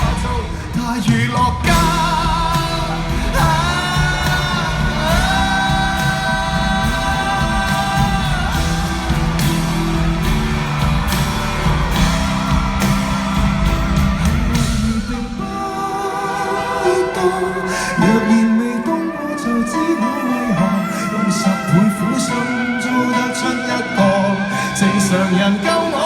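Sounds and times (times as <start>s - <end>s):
live rock band playing: 0.0s - 20.0s.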